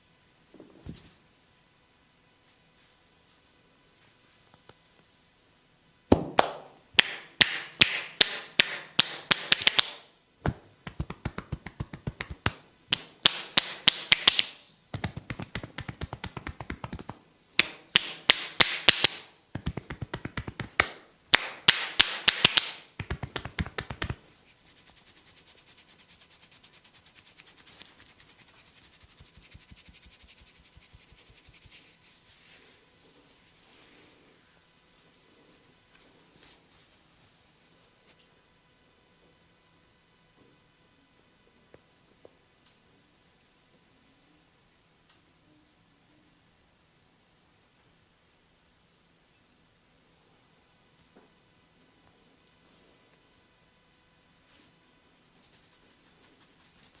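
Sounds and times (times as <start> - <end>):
hands tapping on head: 6.1 - 24.2.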